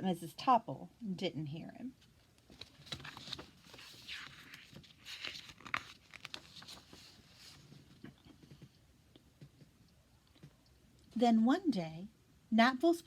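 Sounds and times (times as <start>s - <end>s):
paper pages rustling: 2.0s - 8.8s.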